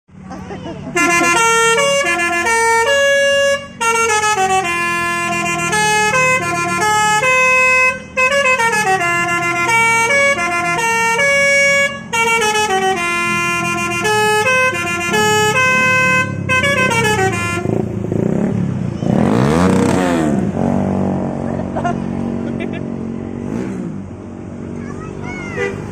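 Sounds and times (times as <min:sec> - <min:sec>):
rushing vehicle noise: 0:00.1 - 0:25.9
multi-tone air horn melody: 0:00.9 - 0:17.8.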